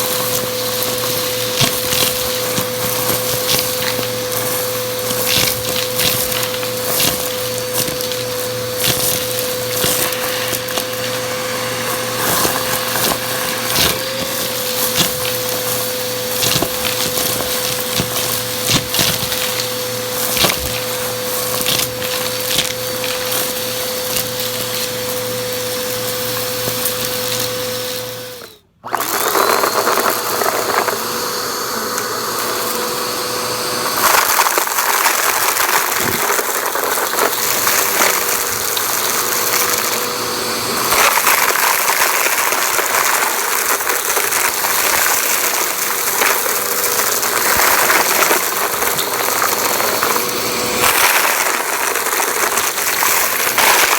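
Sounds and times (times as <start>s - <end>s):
debris crackling up nozzle: 0.0s - 28.5s, 33.9s - 53.9s
vacuum cleaner running: 0.0s - 53.9s.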